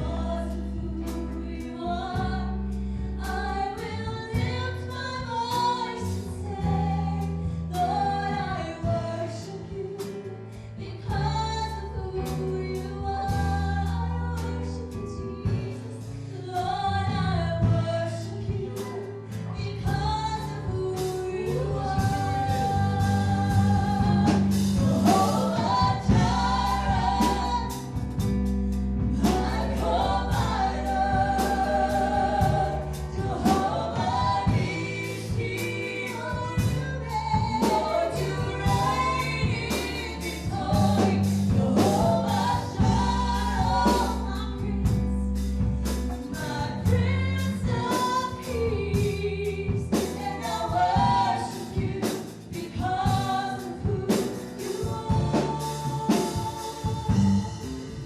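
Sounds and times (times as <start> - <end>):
band with bass and drums: 0.0 - 58.0
voices singing together: 18.2 - 45.0, 46.3 - 57.8.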